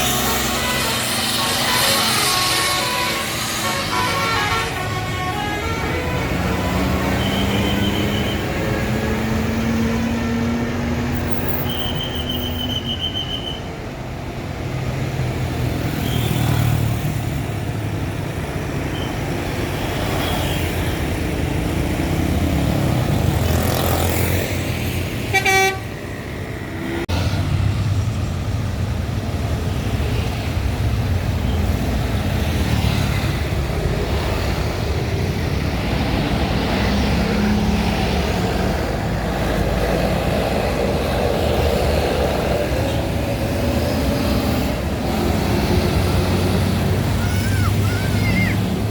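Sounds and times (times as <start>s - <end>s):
bus horn toots: 0.0s - 8.5s, 25.3s - 26.0s
bus engines running: 0.0s - 48.9s.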